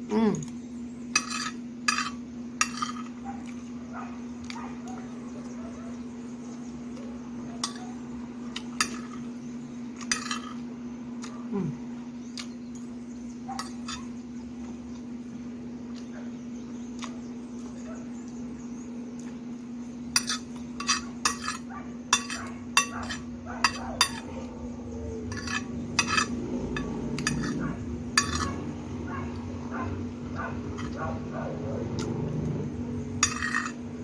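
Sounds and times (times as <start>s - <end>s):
steady low hum: 0.0s - 34.0s
cutlery clinking against dishes: 1.2s - 3.2s, 7.6s - 7.9s, 8.7s - 9.2s, 10.0s - 10.6s, 13.6s - 14.1s, 20.1s - 24.3s, 25.3s - 28.6s, 33.2s - 33.8s.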